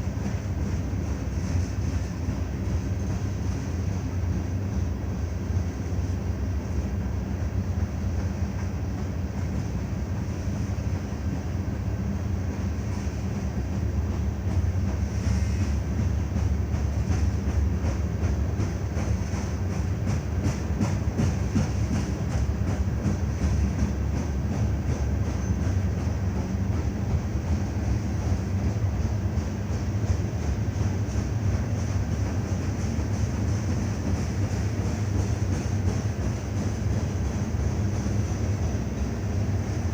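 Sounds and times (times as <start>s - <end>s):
freight train rumbling: 0.0s - 39.9s.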